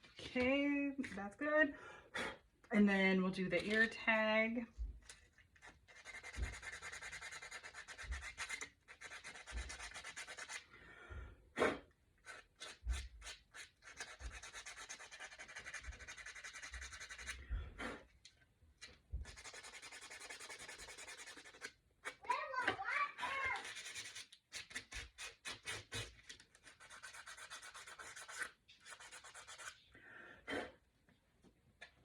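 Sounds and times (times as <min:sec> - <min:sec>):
sandpaper scraping wood: 0:05.9 - 0:10.6, 0:12.2 - 0:17.4, 0:19.2 - 0:21.7, 0:23.6 - 0:29.8.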